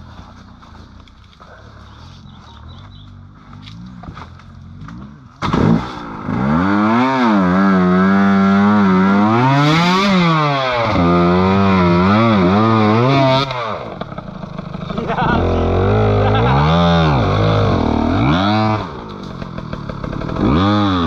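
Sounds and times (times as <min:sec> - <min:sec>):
small motorcycle engine revving: 0:01.8 - 0:21.0.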